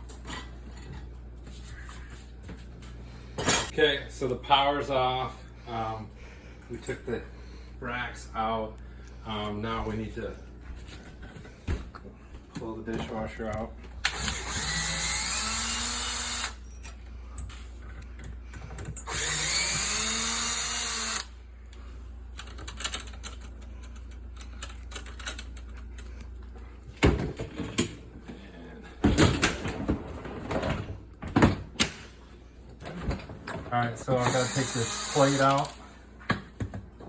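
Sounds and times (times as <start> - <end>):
cordless drill running: 14.1 - 16.6, 19.0 - 21.4, 34.1 - 35.8
clunks and rattles of parts: 18.1 - 19.1, 26.9 - 28.4, 29.0 - 32.1.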